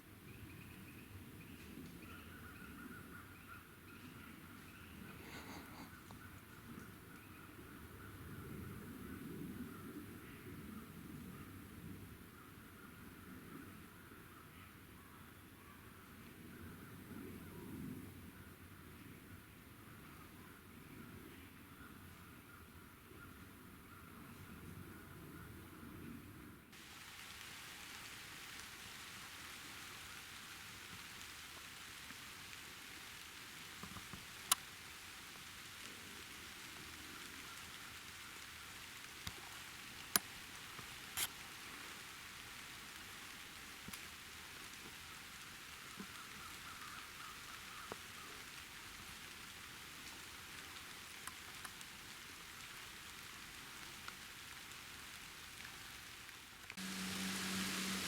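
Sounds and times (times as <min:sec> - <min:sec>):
steady rain falling: 0:00.0 - 0:24.6, 0:26.7 - 0:58.0
loud steady hiss: 0:26.8 - 0:58.0
low hum: 0:56.8 - 0:58.0.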